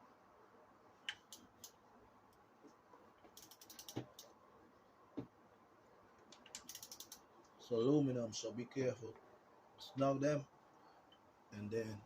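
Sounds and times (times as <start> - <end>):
hand ratchet clicking: 3.4 - 4.3, 6.3 - 7.2.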